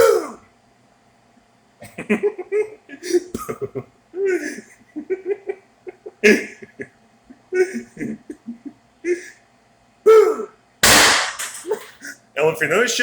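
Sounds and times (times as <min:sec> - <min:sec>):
man chuckling: 0:01.8 - 0:09.4.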